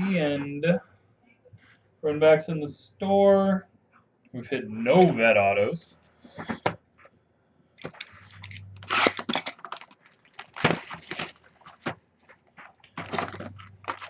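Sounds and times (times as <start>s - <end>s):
card wrappers crackling and tearing: 7.8s - 12.0s, 12.8s - 14.0s.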